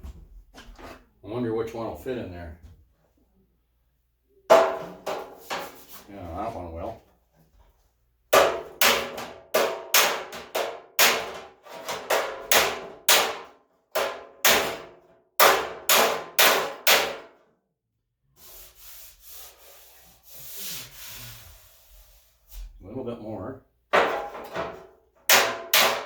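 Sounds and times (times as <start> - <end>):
hammer striking steel fender: 8.4 - 17.3, 24.0 - 26.0.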